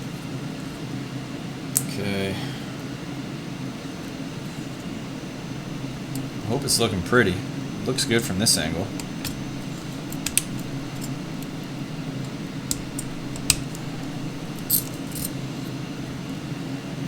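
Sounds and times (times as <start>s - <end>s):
steady low hum: 0.0s - 17.0s
computer parts clicking and clattering: 7.9s - 16.3s.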